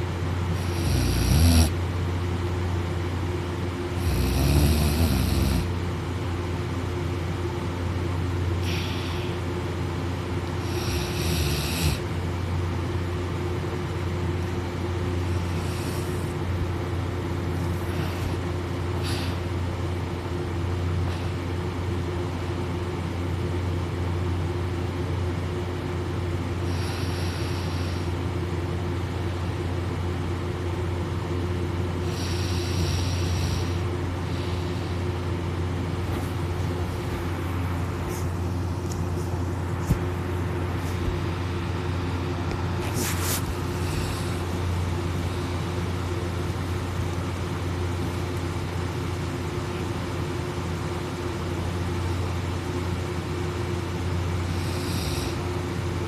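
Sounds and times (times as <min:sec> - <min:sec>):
low mechanical drone: 0:00.0 - 0:56.0
short breathy hisses: 0:08.6 - 0:09.4.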